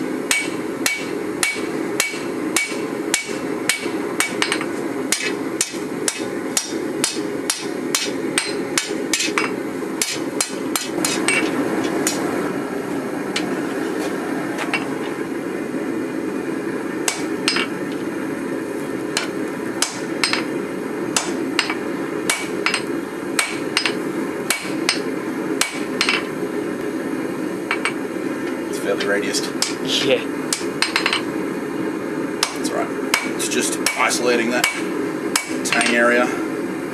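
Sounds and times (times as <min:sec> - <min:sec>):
hammer striking steel on anvil: 0:00.3 - 0:12.3, 0:17.1 - 0:17.7, 0:19.2 - 0:20.5, 0:21.2 - 0:26.3, 0:29.6 - 0:29.8, 0:30.5 - 0:31.3, 0:32.4 - 0:36.0.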